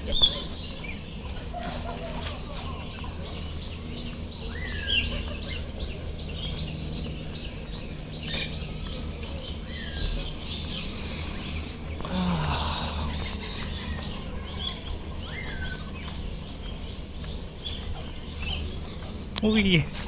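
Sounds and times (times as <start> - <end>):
birds chirping and calling: 0.0 - 20.0
rising and falling bird call: 9.7 - 16.2.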